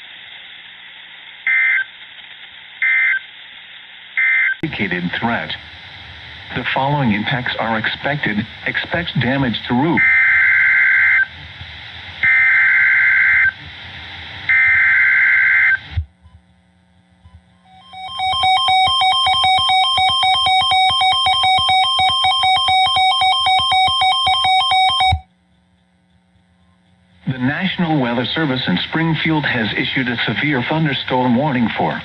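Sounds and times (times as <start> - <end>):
buzzy synthesizer tune: 17.7 - 23.2
digital data bursts: 17.8 - 25.2.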